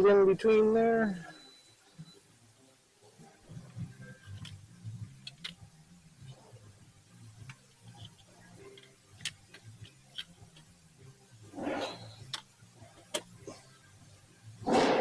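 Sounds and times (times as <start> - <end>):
low steady hum: 0.0 - 15.0
clicks and taps of parts: 3.8 - 5.6, 7.4 - 10.7, 12.2 - 13.4.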